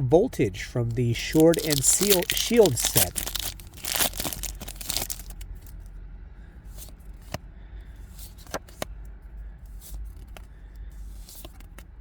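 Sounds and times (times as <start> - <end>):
cards clicking and snapping: 1.2 - 5.4.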